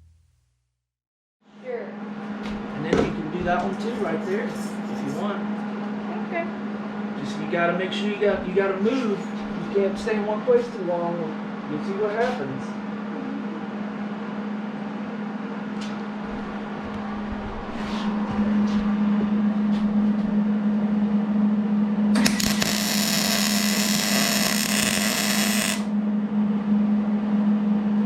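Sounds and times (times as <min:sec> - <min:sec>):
welder low hum: 0:16.1 - 0:28.0
welding arc crackling and buzzing: 0:22.2 - 0:26.0.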